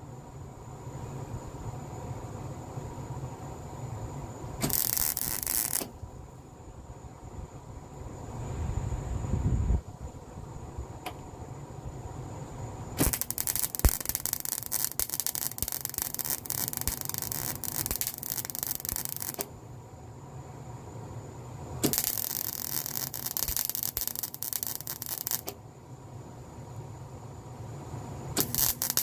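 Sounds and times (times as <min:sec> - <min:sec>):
harsh crackling scraping on metal: 0:04.6 - 0:05.9, 0:13.0 - 0:19.5, 0:21.9 - 0:25.5, 0:28.4 - 0:29.0.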